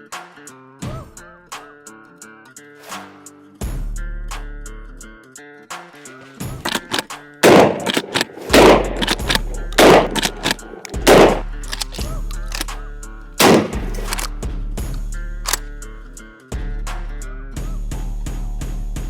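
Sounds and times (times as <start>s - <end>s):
background music: 0.0s - 19.0s
shotgun blasts: 6.5s - 12.7s, 13.4s - 14.4s.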